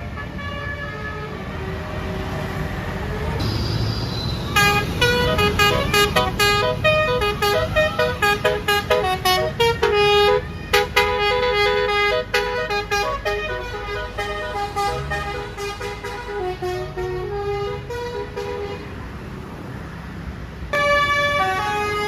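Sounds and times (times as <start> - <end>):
multi-tone air horn melody: 4.5 - 18.8, 20.7 - 22.0.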